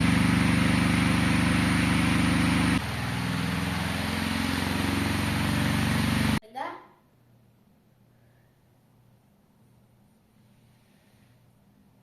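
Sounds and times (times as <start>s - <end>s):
electric fan running: 0.0s - 6.4s.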